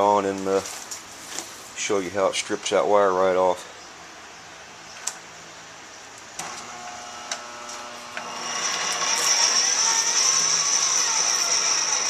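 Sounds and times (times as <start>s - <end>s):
electric drill whining: 6.4s - 12.0s.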